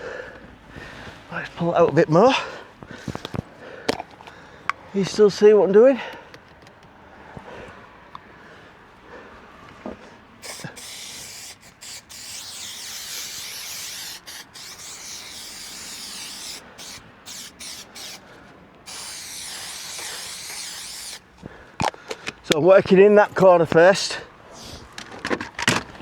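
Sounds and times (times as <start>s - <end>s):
aerosol can hissing: 10.4s - 18.2s, 18.8s - 21.3s.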